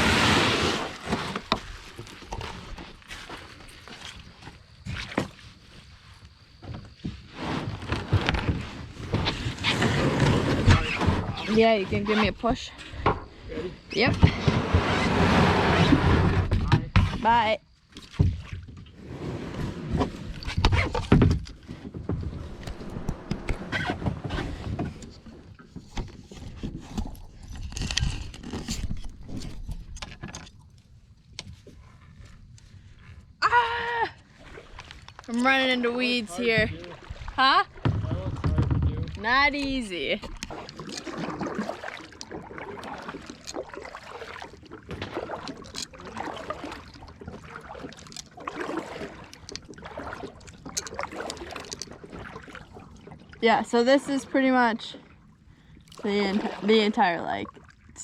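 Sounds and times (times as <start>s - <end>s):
paddle splashing in water: 0.0s - 30.7s, 34.2s - 58.0s
paddle knocking on plastic hull: 36.4s - 53.6s.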